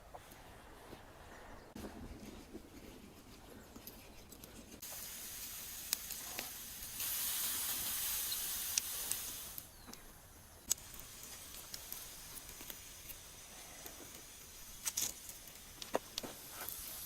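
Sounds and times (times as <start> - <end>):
pops and crackles: 3.8 - 17.0
food sizzling: 4.8 - 9.9, 10.5 - 17.0.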